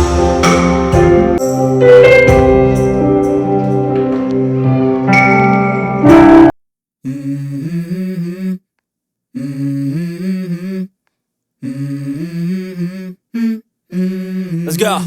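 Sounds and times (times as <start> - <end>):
music: 0.0 - 6.5
person humming: 7.0 - 8.6, 9.4 - 11.0, 11.6 - 15.0.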